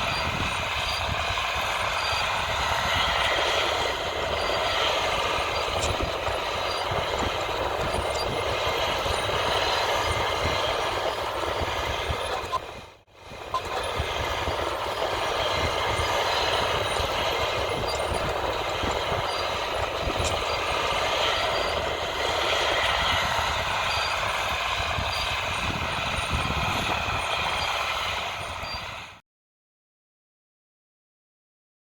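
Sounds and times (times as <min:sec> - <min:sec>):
tractor engine rumble: 0:00.0 - 0:29.2
mechanical clatter: 0:04.1 - 0:12.6, 0:13.5 - 0:27.7.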